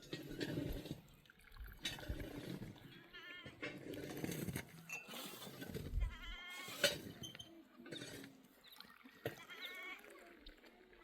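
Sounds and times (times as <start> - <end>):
sheep or goats bleating: 6.0 - 6.8.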